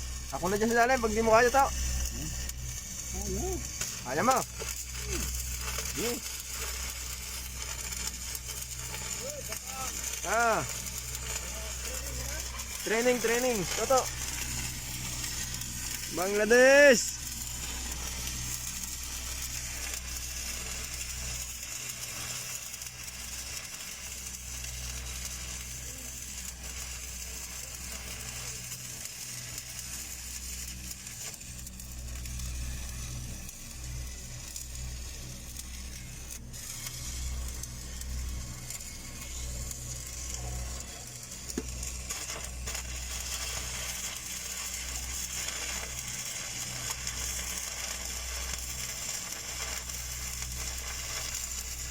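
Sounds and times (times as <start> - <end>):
low hum: 0.0 - 21.5, 32.0 - 48.6
welding arc crackling: 0.0 - 51.9.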